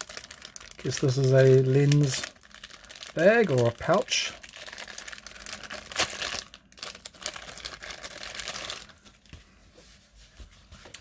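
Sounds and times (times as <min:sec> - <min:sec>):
packaging crinkling and rustling: 0:00.0 - 0:09.3.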